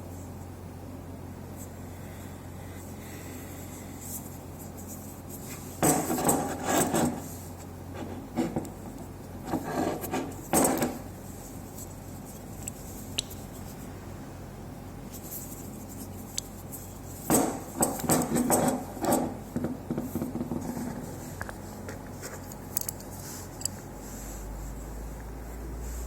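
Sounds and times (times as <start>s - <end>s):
metal clatter and rubbing: 4.8s - 7.4s, 15.1s - 23.9s.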